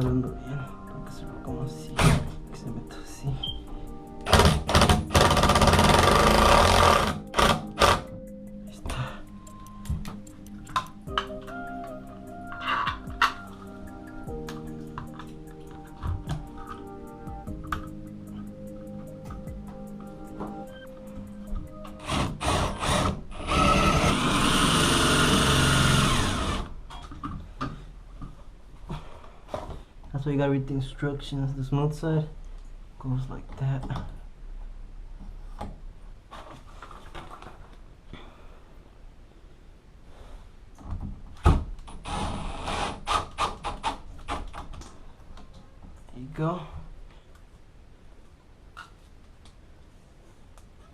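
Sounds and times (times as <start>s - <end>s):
power drill whining: 4.2s - 8.0s, 22.0s - 26.7s.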